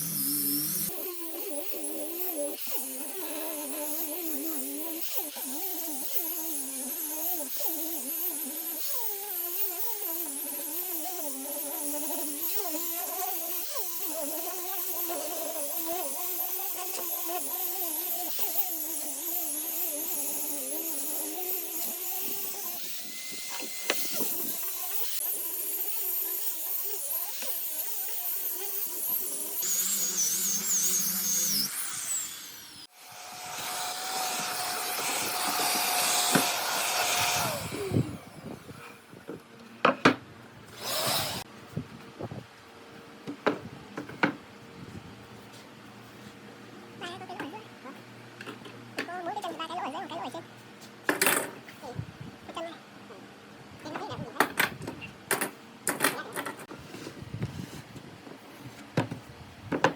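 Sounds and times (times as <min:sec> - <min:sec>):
power tool motor whining: 0:00.0 - 0:39.4, 0:40.7 - 0:41.5.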